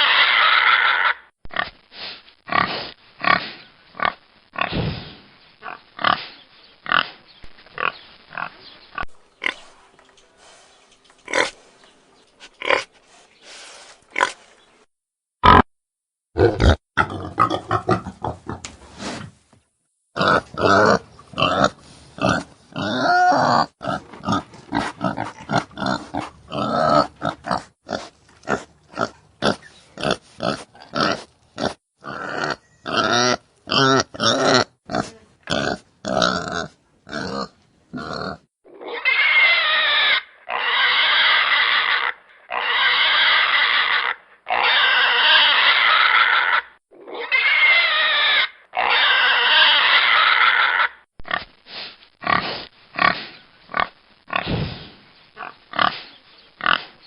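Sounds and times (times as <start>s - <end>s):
pigs squealing: 0.0s - 1.3s, 20.2s - 51.1s
pigs grunting: 16.4s - 18.7s, 20.2s - 51.4s.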